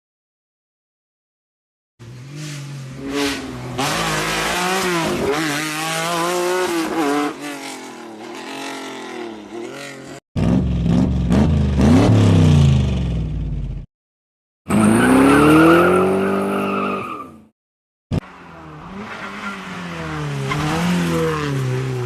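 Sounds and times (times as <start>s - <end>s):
rally car engine revving: 2.0s - 13.3s, 14.7s - 17.2s, 18.1s - 22.0s
deeper rally car engine: 2.0s - 13.9s.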